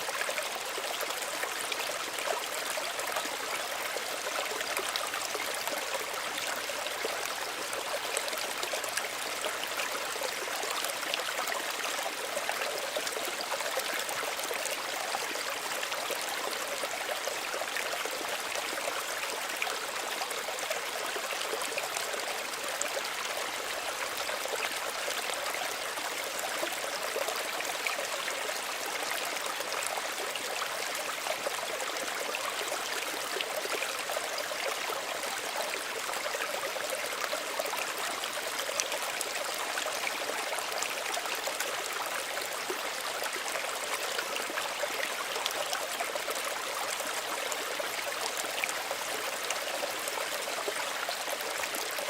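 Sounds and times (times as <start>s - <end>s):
stream babbling over stones: 0.0s - 52.0s.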